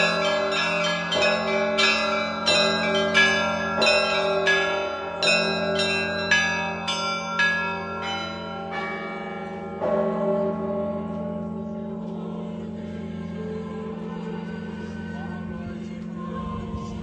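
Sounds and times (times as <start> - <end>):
small church bells struck: 0.0 - 12.7
large bell humming: 0.0 - 16.2.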